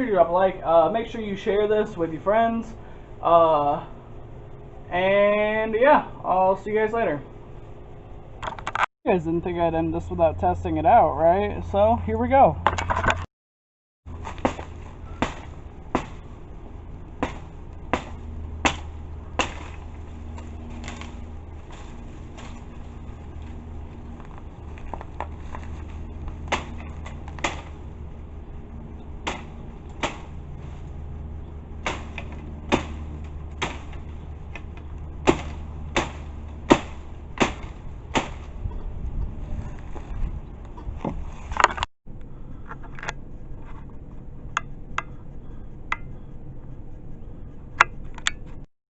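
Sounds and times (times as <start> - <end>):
steady low hum: 0.0 - 13.3, 14.1 - 48.7
axe chopping strikes: 14.1 - 16.3, 17.2 - 19.9, 26.5 - 27.8, 29.2 - 30.4, 31.8 - 38.6.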